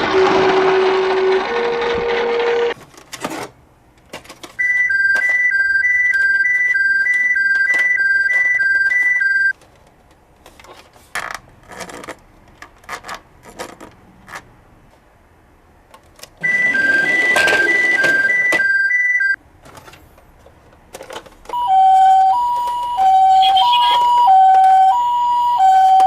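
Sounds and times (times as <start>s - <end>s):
toy siren hi-lo: 16.4s - 19.3s, 21.6s - 26.0s.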